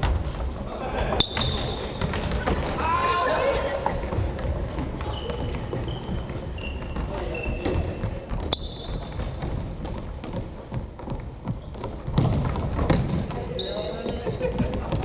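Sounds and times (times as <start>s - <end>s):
shoes squeaking on gym floor: 0.0s - 15.0s
loud ball kick: 12.0s - 13.4s.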